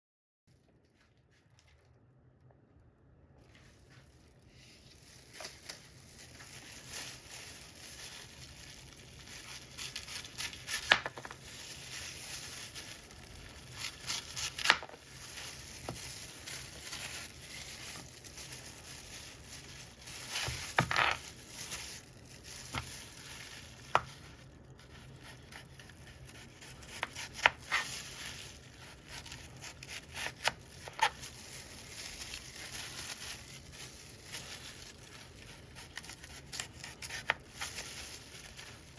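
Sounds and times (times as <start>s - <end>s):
knife cutting apple: 24.9s - 31.2s, 35.2s - 37.8s.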